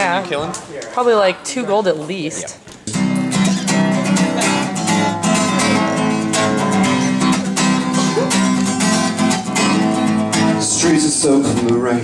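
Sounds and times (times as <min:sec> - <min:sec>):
acoustic guitar strumming: 0:02.9 - 0:12.0.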